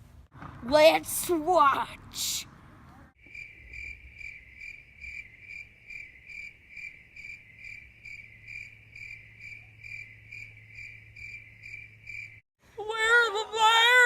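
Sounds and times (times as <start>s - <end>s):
cricket chirping: 3.2s - 12.4s.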